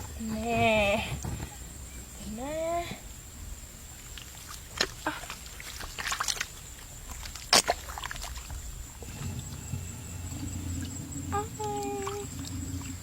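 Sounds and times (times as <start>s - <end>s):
hands splashing in mud and water: 4.1s - 9.3s.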